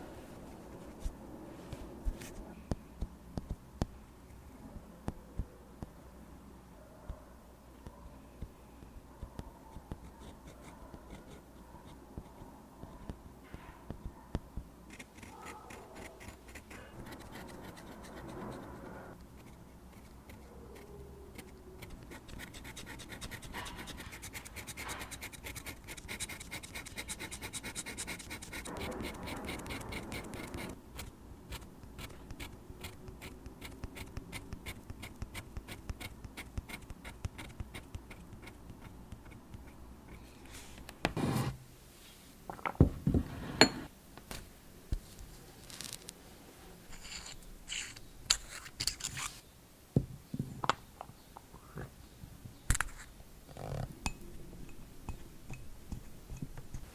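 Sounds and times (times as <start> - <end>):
pen nib scratching on paper: 14.9 - 40.2.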